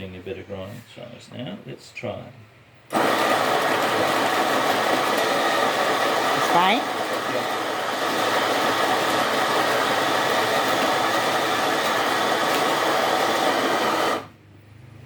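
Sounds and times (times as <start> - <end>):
electric coffee grinder running: 2.9 - 14.3.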